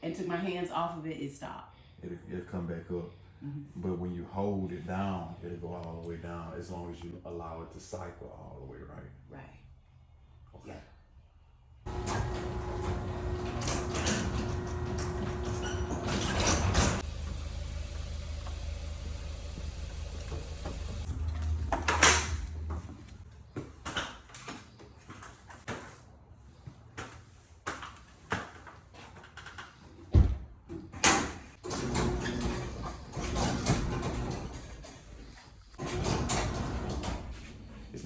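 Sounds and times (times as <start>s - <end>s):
garage door opener humming: 11.9s - 23.2s, 31.6s - 38.0s.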